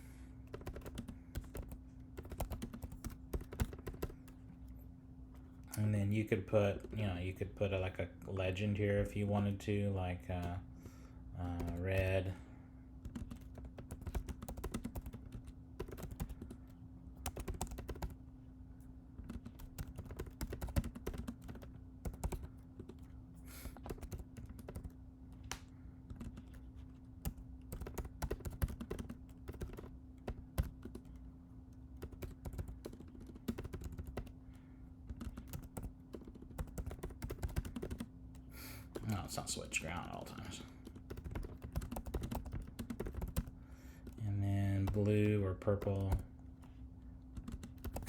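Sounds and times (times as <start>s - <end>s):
steady low hum: 0.0s - 48.0s.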